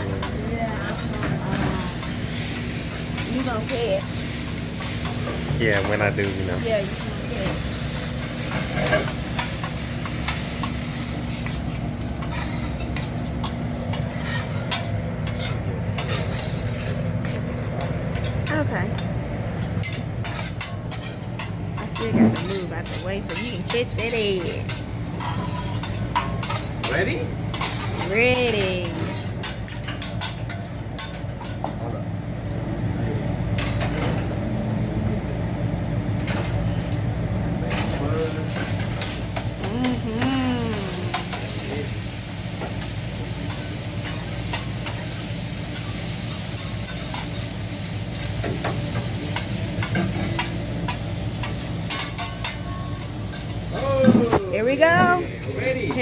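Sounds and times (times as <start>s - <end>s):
food sizzling on a griddle: 0.0s - 17.0s, 38.1s - 56.0s
restaurant background rumble: 0.0s - 56.0s.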